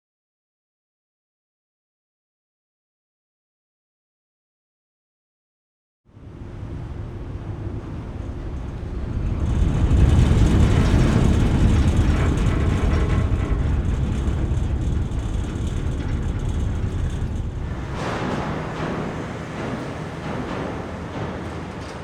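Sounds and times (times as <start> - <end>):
ferry engines rumbling: 6.2 - 22.0
propellers churning water: 16.9 - 22.0.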